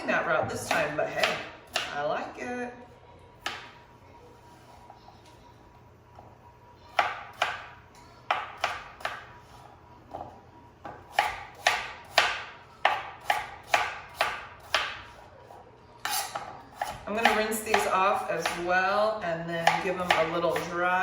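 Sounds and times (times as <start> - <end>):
knife chopping on cutting board: 3.4 - 3.7, 7.0 - 7.7, 8.3 - 9.2, 10.8 - 15.1, 16.1 - 18.6, 19.6 - 20.7.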